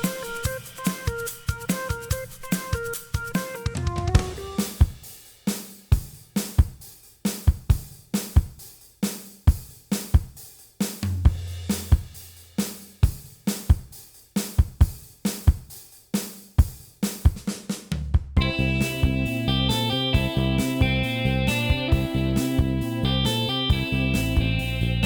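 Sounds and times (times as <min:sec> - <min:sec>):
drum kit beat: 0:00.0 - 0:25.0
held bass note: 0:18.4 - 0:25.0.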